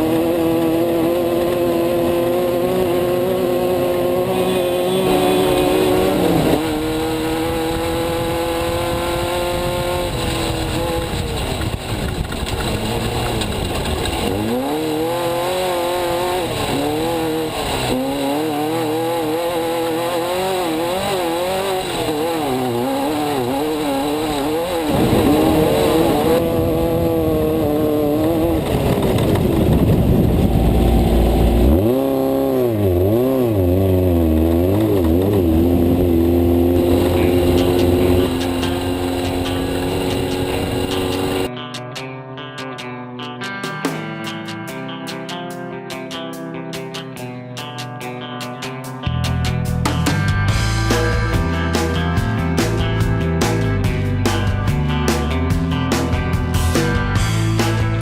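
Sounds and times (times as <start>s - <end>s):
race car engine revving: 0.0s - 41.5s.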